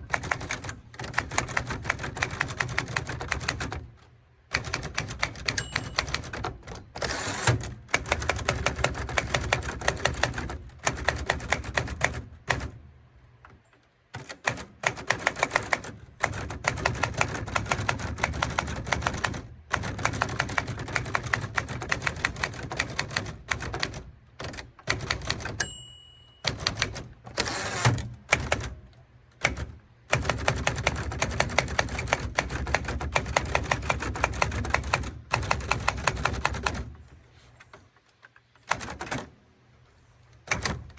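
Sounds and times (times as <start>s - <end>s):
typewriter keystrokes: 0.0s - 12.9s, 14.1s - 39.4s, 40.3s - 40.9s
typewriter bell ringing: 5.4s - 7.5s, 25.4s - 28.0s.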